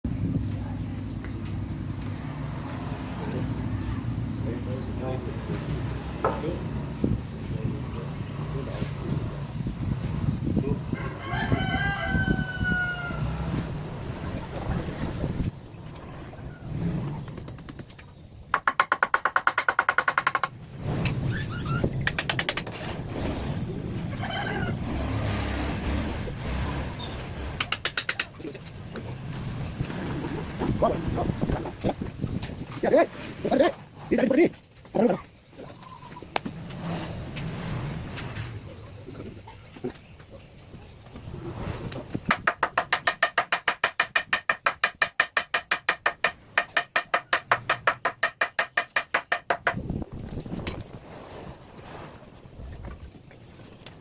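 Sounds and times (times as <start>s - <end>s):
mallet tapping chisel into wood: 18.5s - 20.6s, 27.6s - 28.3s, 42.3s - 49.8s
rapid knocking on wood: 18.5s - 20.6s, 42.3s - 49.8s.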